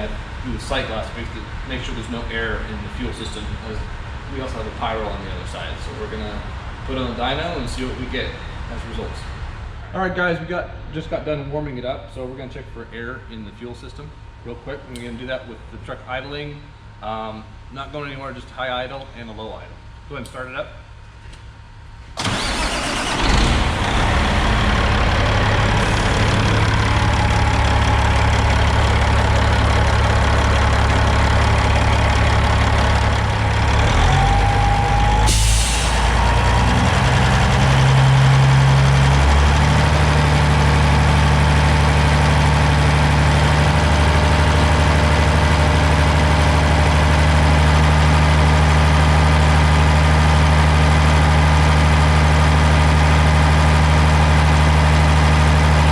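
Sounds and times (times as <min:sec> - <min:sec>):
diesel truck engine starting and idling: 0:22.1 - 0:55.9.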